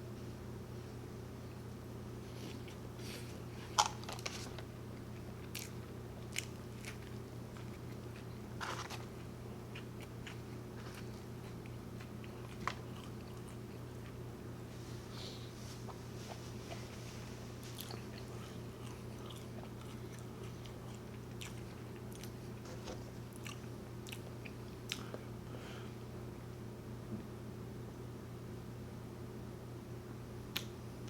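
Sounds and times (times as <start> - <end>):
steady low hum: 0.0 - 31.0
person chewing food: 2.3 - 14.2, 15.3 - 25.4
crisp crunches: 5.4 - 11.2.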